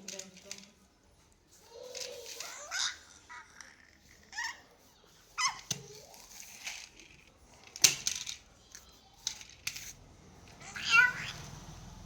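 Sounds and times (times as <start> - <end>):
toy car squeaks: 5.4 - 6.8, 10.6 - 11.5
toy car clicks and knocks: 5.6 - 10.6.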